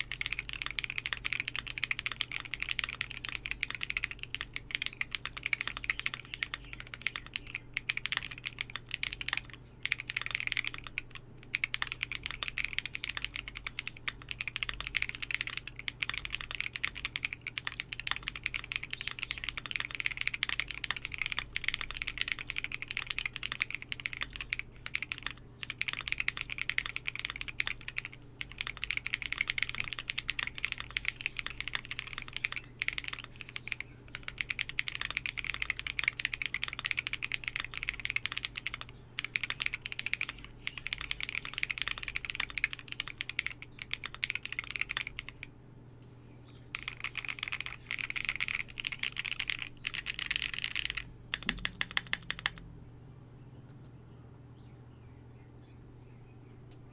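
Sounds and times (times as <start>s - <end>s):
fast typing on mechanical keyboard: 0.0s - 45.5s, 46.7s - 52.6s.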